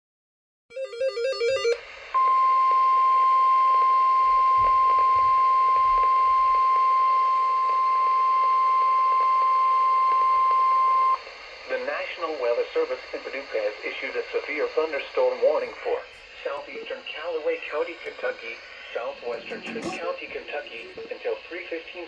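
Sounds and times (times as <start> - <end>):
warbling tones: 19.3 - 21.0.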